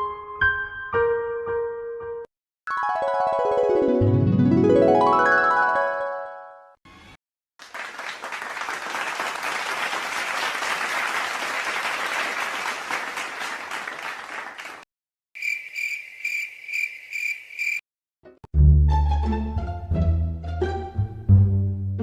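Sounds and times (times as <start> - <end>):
crowd applause: 7.6 - 14.8
cricket chirping: 15.4 - 17.8.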